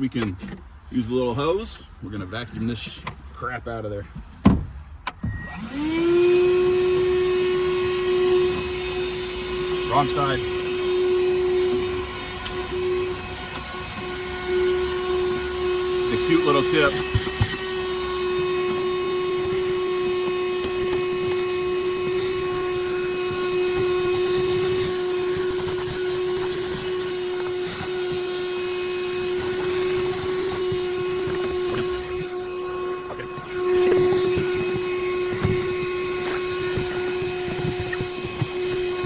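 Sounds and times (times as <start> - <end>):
handheld vacuum whining: 5.1 - 39.0.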